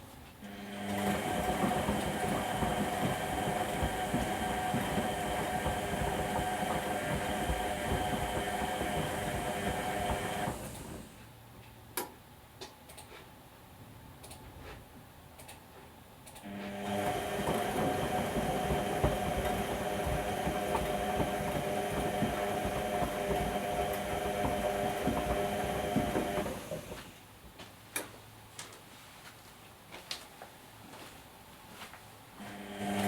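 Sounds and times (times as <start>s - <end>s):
washing machine motor hum: 0.4s - 11.3s, 16.4s - 27.3s, 32.4s - 33.0s.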